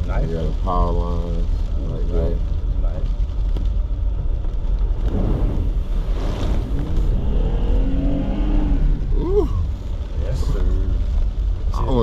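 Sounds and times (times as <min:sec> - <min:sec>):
engine rumbling under load: 0:00.0 - 0:12.0.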